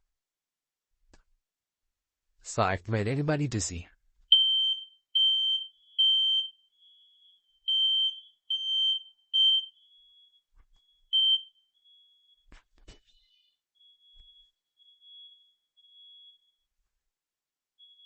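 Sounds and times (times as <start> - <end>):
smoke detector alarm beeps: 4.3 - 12.5, 13.7 - 16.7, 17.8 - 18.0.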